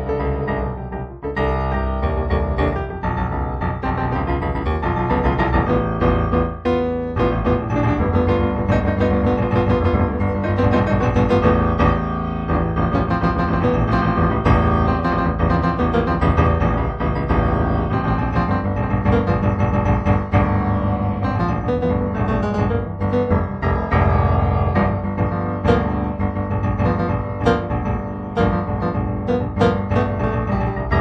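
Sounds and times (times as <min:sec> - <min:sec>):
solo piano improvisation: 0:00.0 - 0:31.0.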